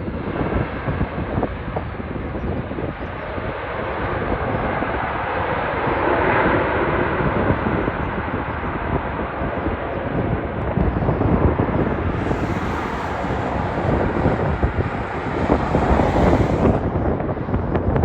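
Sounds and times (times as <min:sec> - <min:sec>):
wind buffeting microphone: 0:00.0 - 0:06.1, 0:06.8 - 0:18.0
jet engines landing: 0:09.8 - 0:18.0.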